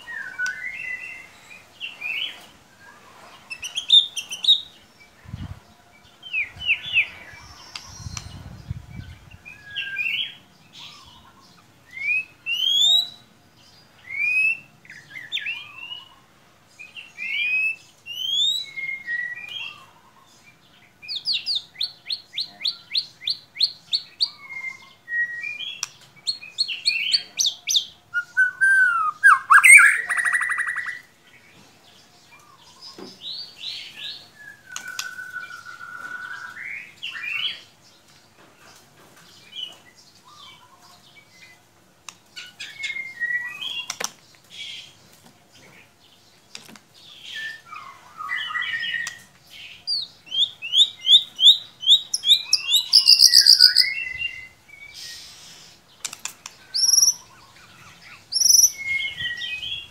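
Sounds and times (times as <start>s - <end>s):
bird singing whistles: 0.0s - 1.4s, 11.9s - 13.2s, 17.2s - 19.7s, 22.7s - 25.9s, 28.1s - 31.0s, 34.4s - 37.6s, 42.6s - 43.9s, 49.9s - 55.3s, 58.1s - 59.9s.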